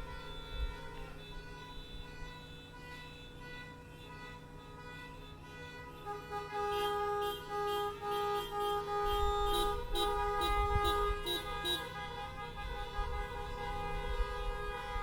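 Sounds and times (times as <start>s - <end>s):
car horns honking: 0.0s - 15.0s.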